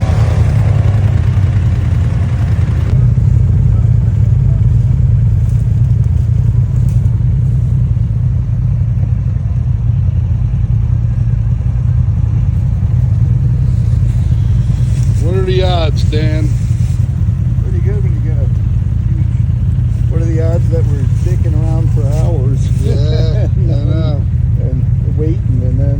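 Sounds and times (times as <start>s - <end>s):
off-road vehicle engine rumble: 0.0s - 25.9s.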